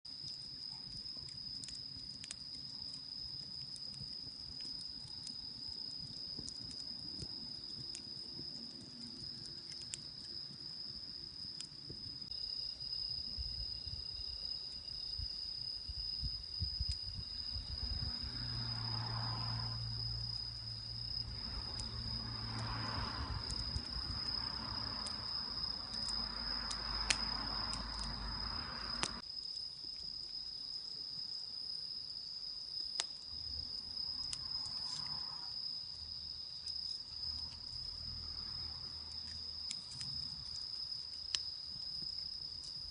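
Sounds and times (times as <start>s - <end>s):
cricket trilling: 0.1s - 42.9s
low rumbling noise: 16.2s - 29.2s.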